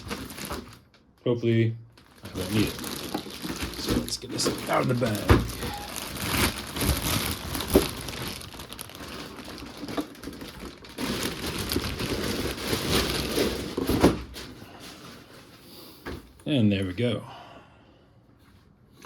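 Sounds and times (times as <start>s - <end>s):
plastic bag crinkling: 0.0s - 1.0s, 1.9s - 15.4s.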